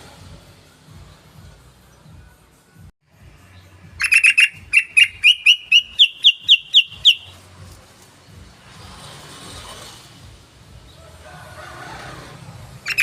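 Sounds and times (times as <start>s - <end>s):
bird calling bright clipped notes: 4.0s - 7.4s.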